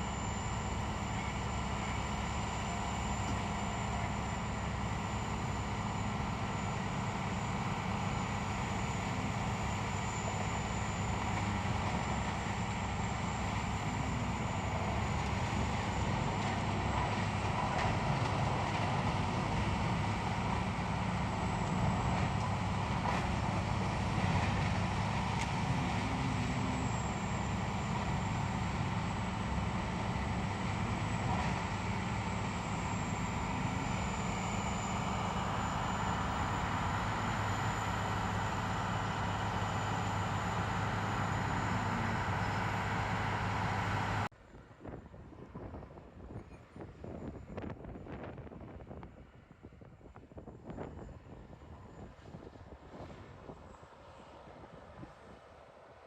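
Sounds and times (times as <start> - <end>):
machine tool humming: 0.0 - 44.3
thin high whine: 0.0 - 44.3.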